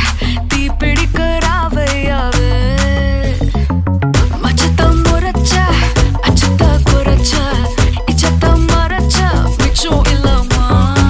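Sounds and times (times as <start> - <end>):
music with steady beat: 0.0 - 11.0
person singing: 0.0 - 11.0.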